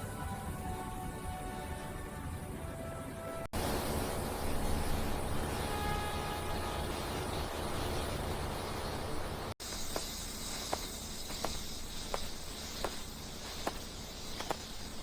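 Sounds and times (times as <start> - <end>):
insect chirring: 4.0 - 15.0.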